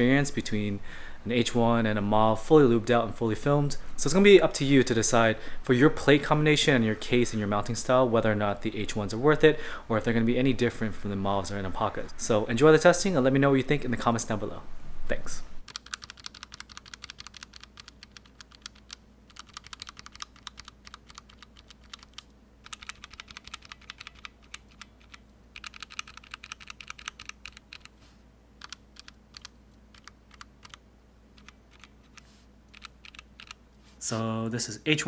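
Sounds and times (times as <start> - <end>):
mechanical keyboard typing: 15.7 - 27.9, 28.6 - 30.8, 31.4 - 33.6.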